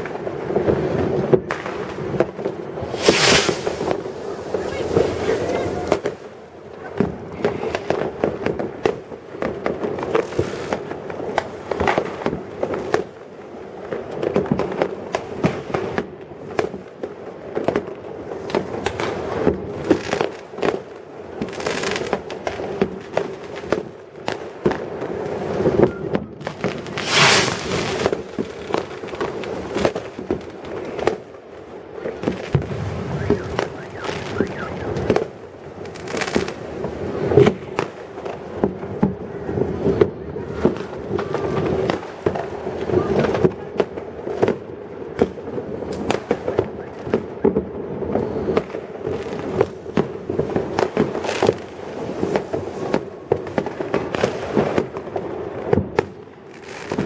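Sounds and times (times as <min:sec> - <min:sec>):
fireworks and firecrackers banging: 0:00.0 - 0:57.0
loud hissing firework burst: 0:02.8 - 0:06.3, 0:26.8 - 0:28.3.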